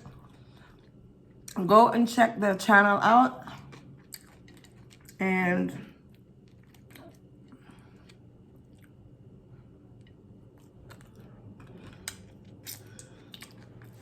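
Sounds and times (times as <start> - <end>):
faint chewing: 3.4 - 14.0.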